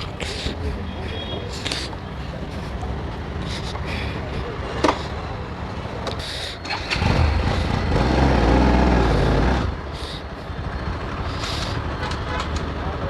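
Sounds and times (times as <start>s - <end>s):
road noise: 0.0s - 13.0s
motorcycle engine revving: 6.6s - 12.6s.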